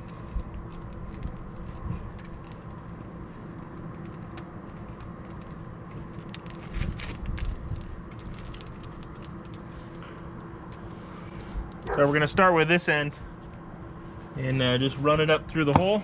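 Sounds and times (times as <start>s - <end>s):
metallic clinks and rattles: 0.0s - 12.3s
steady background hum: 0.0s - 16.0s.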